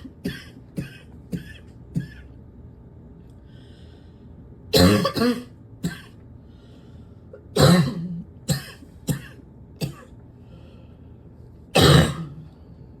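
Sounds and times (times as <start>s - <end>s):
person coughing harshly: 0.0s - 2.3s, 4.7s - 6.2s, 7.5s - 10.2s, 11.8s - 12.5s.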